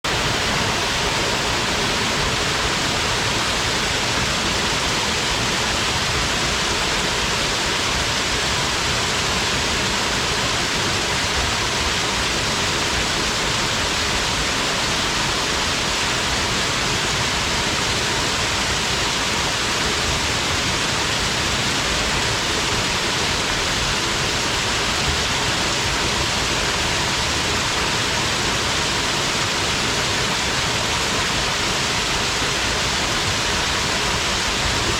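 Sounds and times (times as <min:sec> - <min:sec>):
waterfall splashing into pool: 0:00.1 - 0:34.9.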